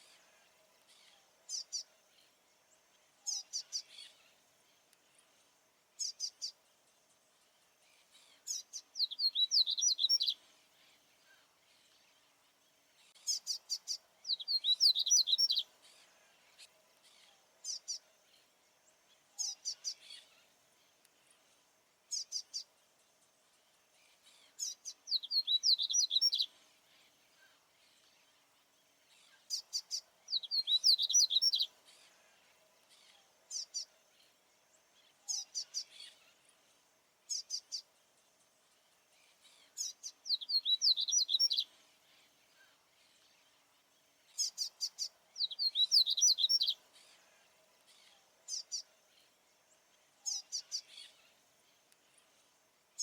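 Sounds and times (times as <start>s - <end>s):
seedeater bird singing: 8.2s - 10.4s, 13.1s - 15.7s, 24.3s - 26.6s, 29.3s - 32.1s, 39.4s - 41.8s, 44.3s - 47.2s, 50.2s - 51.3s.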